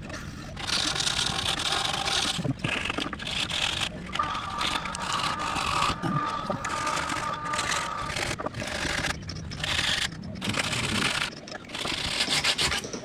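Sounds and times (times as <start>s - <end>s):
power sander rasping on wood: 3.3s - 9.1s
motor whining: 4.2s - 11.3s.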